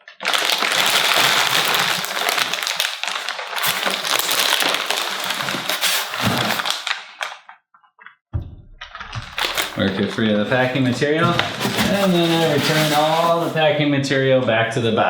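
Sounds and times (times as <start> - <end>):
plastic bag crinkling: 0.0 - 7.6, 9.2 - 13.8
dull low bump: 8.4 - 9.4.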